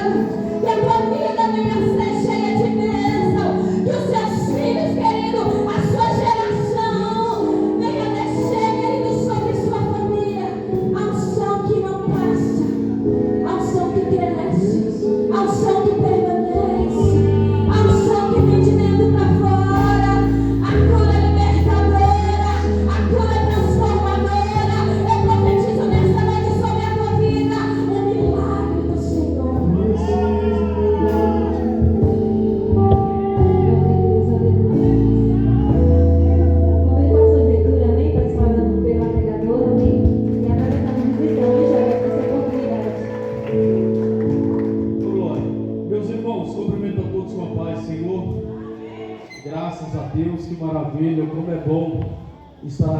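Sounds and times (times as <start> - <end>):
gospel singing over held chords: 0.0 - 49.4
deep bass line: 16.5 - 48.5.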